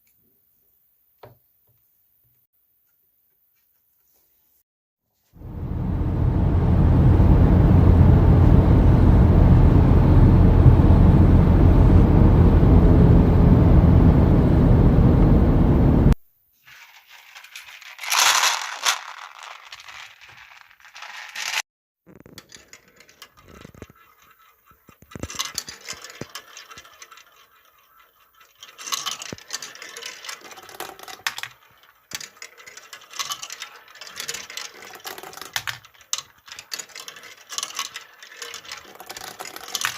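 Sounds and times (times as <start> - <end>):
many marbles rolling: 16.6 - 39.9
marbles clicking on wooden track: 16.7 - 21.6, 22.3 - 39.9.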